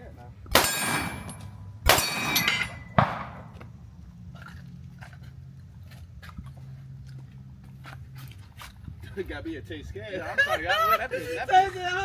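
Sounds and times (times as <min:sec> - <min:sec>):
low steady hum: 0:00.0 - 0:12.0
sharp metallic impacts: 0:00.5 - 0:03.7.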